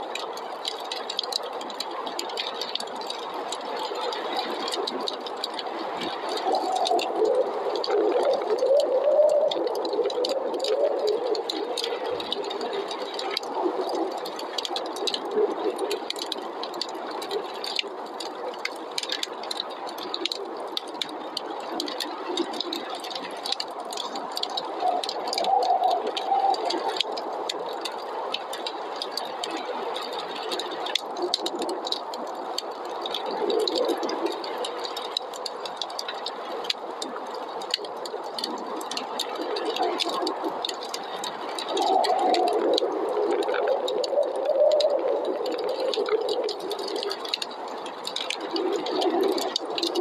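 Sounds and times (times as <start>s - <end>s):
wood fire crackling: 0.0s - 50.0s
rushing snowstorm wind: 38.5s - 50.0s.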